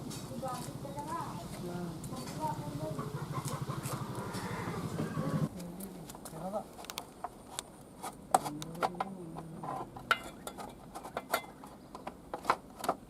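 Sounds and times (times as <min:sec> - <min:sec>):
metallic clinks and knocks: 0:10.0 - 0:11.7.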